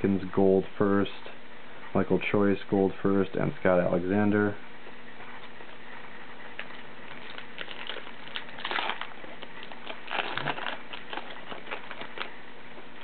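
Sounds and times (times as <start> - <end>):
foil wrapper crinkling: 6.6 - 12.4.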